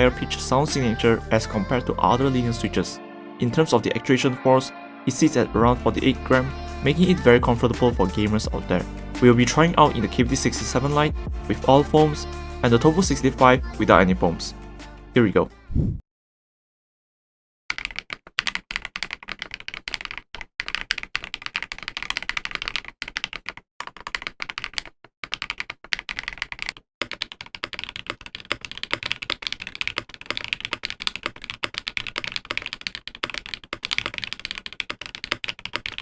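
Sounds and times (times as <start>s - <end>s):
mechanical keyboard typing: 17.7s - 36.0s.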